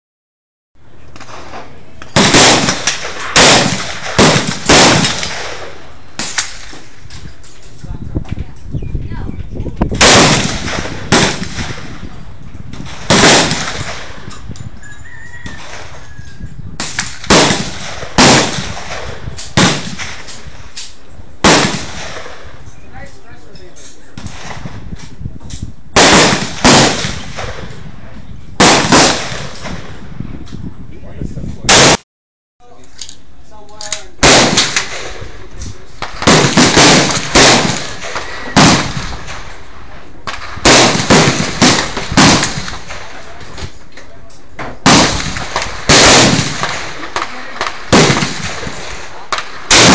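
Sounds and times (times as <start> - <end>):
rifle shots with echo: 1.2 - 6.9, 10.0 - 12.1, 12.8 - 14.4, 16.8 - 22.6, 26.0 - 27.8, 28.6 - 30.0, 31.7 - 32.0, 34.2 - 43.6, 44.8 - 49.9.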